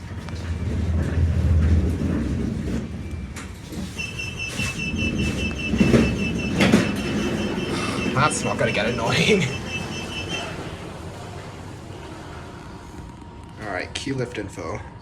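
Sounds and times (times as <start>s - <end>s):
lift running with low rumble: 0.0s - 15.0s
rapid electronic beeping: 4.0s - 10.8s.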